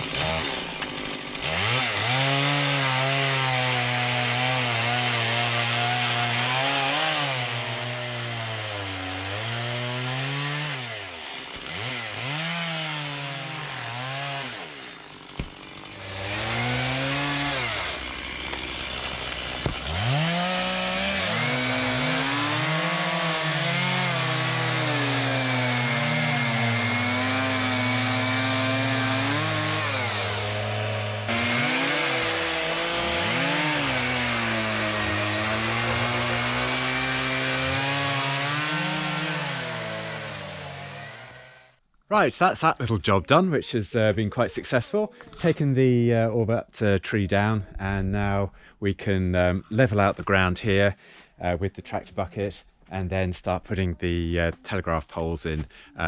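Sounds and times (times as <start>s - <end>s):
chainsaw cutting wood: 0.0s - 41.8s.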